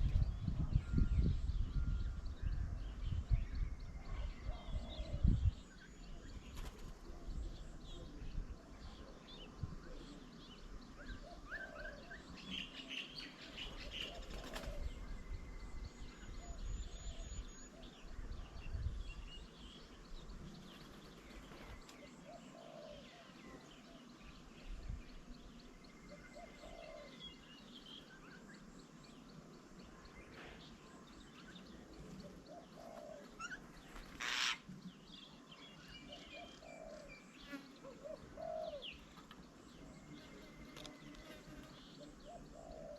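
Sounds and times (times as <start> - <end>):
birds chirping: 0.0 - 42.9
wings flapping: 6.5 - 7.0, 14.0 - 14.8.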